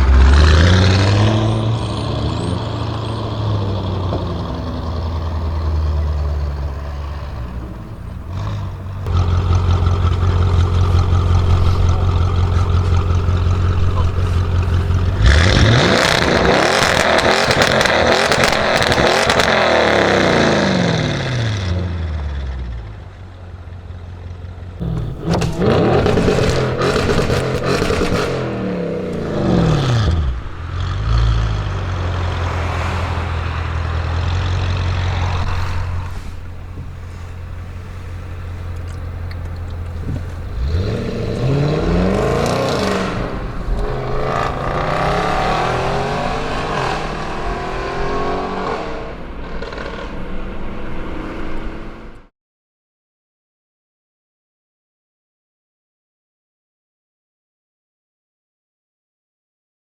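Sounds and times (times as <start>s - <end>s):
car engine revving: 0.0s - 23.8s, 24.4s - 52.3s.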